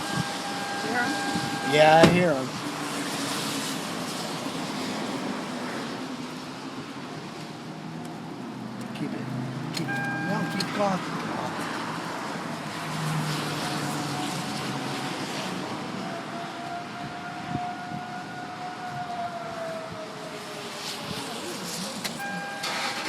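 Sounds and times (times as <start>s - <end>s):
distant warning siren: 0.0s - 6.0s, 9.8s - 11.0s, 11.8s - 23.0s.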